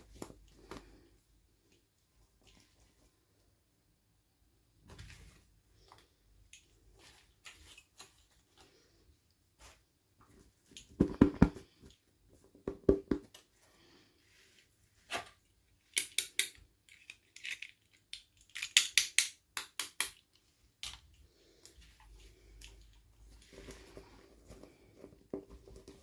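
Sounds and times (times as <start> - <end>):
plastic toy pieces clicking: 15.9 - 20.2.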